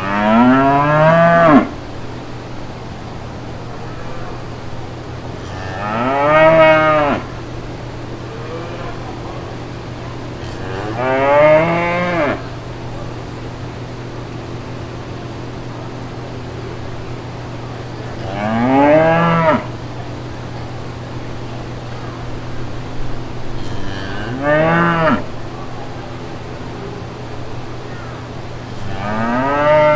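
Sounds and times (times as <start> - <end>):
cattle mooing: 0.0 - 2.2, 3.4 - 13.2, 18.2 - 19.8, 23.4 - 25.4, 28.0 - 29.9
steady low hum: 0.0 - 29.9.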